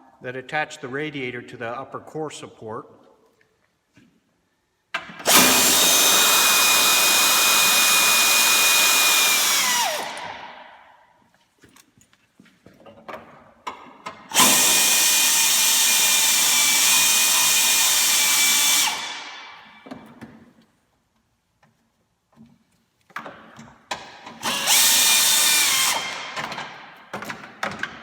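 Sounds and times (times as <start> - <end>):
power driver whirring: 5.2 - 10.6, 14.3 - 19.8, 24.4 - 26.8
handling clatter and knocks: 11.4 - 14.3.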